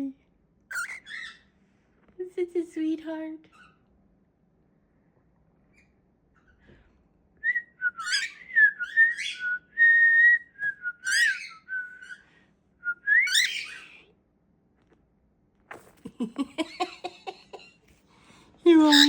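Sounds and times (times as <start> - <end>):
pet bird whistling: 7.8 - 12.2, 13.0 - 14.0.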